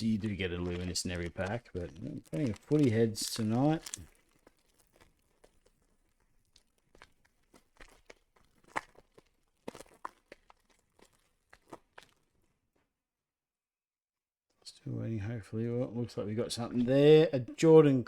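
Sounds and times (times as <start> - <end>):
sharp crackles: 0.0 - 12.3
wrapper crinkling: 0.0 - 12.3.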